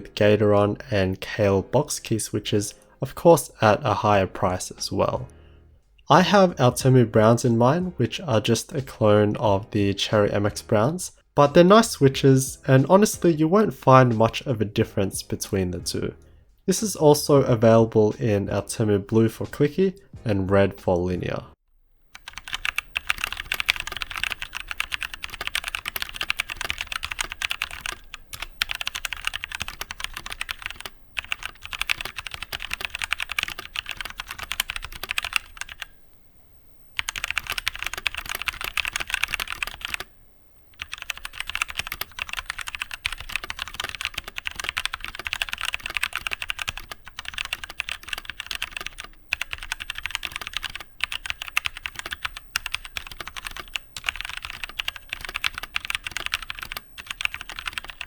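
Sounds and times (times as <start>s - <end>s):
mechanical keyboard typing: 22.1s - 36.0s, 37.0s - 40.1s, 40.7s - 58.0s.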